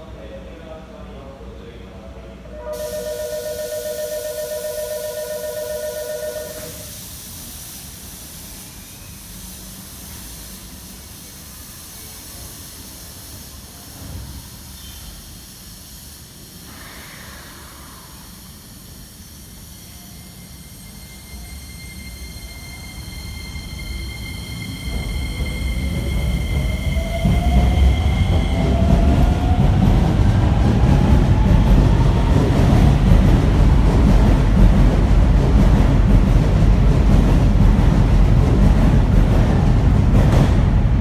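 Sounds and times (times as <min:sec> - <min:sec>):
station platform hiss and rumble: 0:00.0 - 0:41.0
electric train approaching: 0:02.5 - 0:41.0
pitched musical tone: 0:02.7 - 0:06.8
steady high whine: 0:02.9 - 0:06.9.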